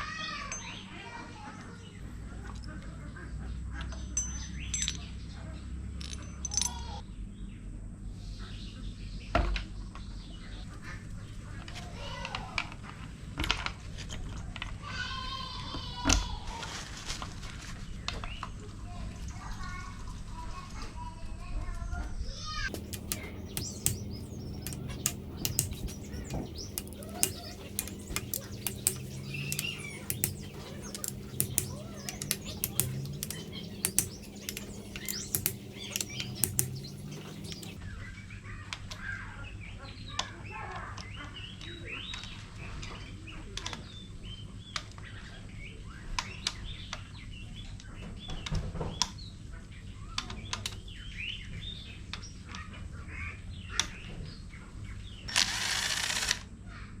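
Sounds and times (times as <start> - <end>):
birds chirping: 22.7 - 37.8
hand tools and metal clinking: 22.7 - 37.8
steady low hum: 22.7 - 37.8.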